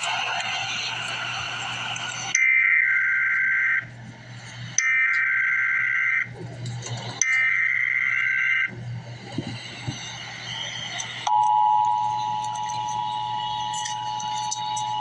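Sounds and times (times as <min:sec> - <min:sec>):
digital data bursts: 0:09.5 - 0:15.0
two-tone attention signal: 0:11.3 - 0:15.0.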